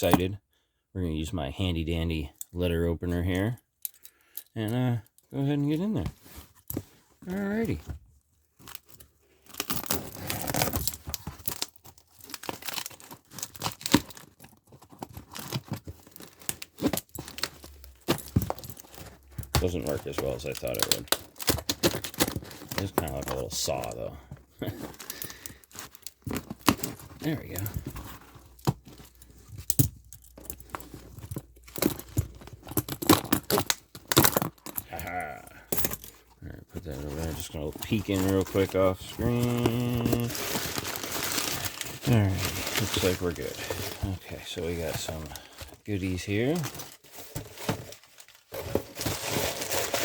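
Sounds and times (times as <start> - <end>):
packaging crinkling: 8.6 - 24.0, 24.6 - 50.0.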